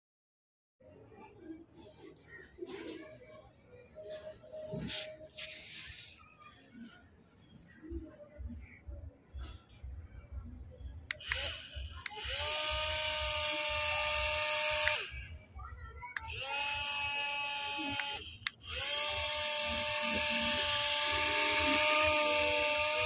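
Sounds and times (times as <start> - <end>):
small electric motor whining: 11.1 - 15.4, 16.2 - 23.0.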